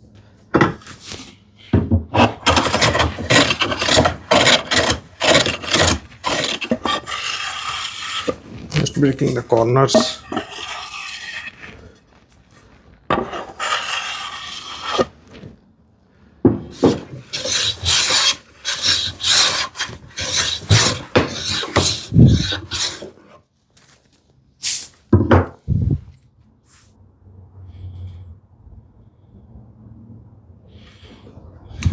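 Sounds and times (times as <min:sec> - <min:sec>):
hand tool rubbing wood: 0:02.2 - 0:15.4, 0:16.8 - 0:23.4.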